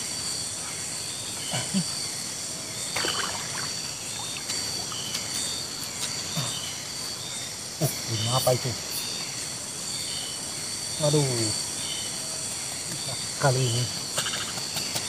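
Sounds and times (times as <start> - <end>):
insect drone: 0.0 - 15.0
river water splashing: 3.0 - 5.4.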